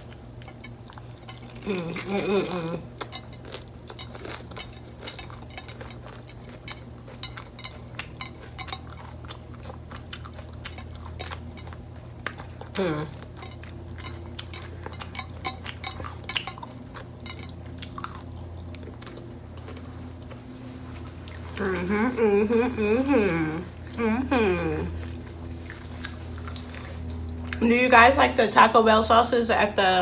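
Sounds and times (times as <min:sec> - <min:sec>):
crunching and chewing: 0:00.0 - 0:21.7, 0:24.9 - 0:27.6
steady low hum: 0:00.0 - 0:30.0
person humming mm: 0:12.8 - 0:13.2, 0:21.6 - 0:25.0.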